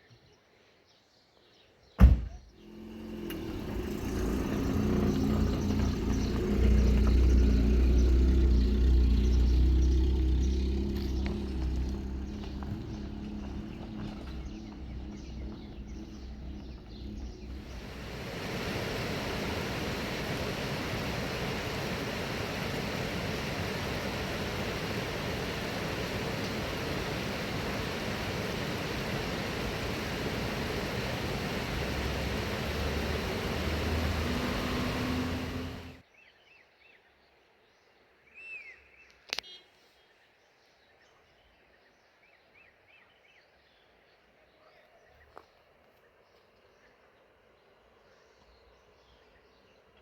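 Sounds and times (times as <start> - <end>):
steady rushing noise: 2.6 - 36.0.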